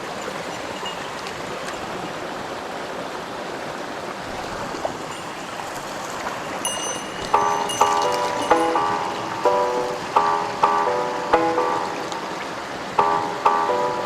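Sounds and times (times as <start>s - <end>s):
mountain stream rushing: 0.0s - 14.0s
plucked-string background music: 6.8s - 14.0s.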